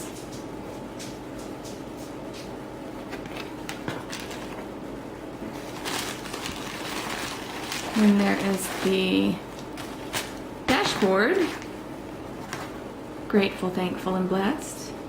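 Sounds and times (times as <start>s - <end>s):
rustling and clicks of plastic card: 2.4s - 4.7s, 5.6s - 11.8s.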